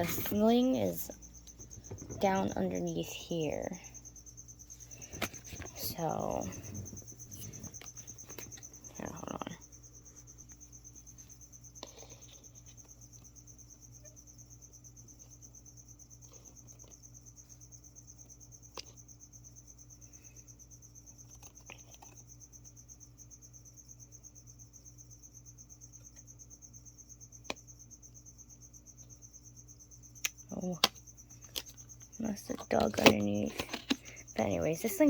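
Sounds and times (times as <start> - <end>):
cricket chirping: 0.0 - 35.0.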